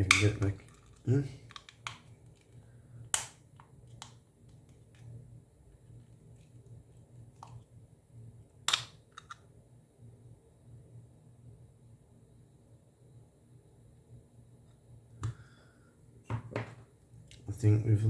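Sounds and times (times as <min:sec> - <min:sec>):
hard plastic clicks and snaps: 0:00.1 - 0:05.1, 0:08.7 - 0:09.4.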